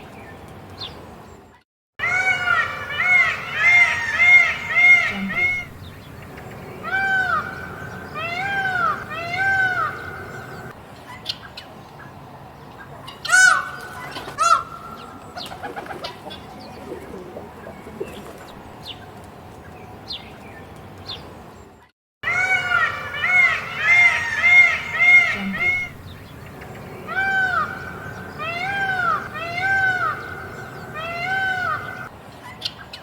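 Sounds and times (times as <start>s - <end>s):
peacock calling: 2.0s - 11.5s, 13.0s - 18.6s, 22.2s - 32.8s
small birds chirping: 4.2s - 21.8s, 23.4s - 33.0s.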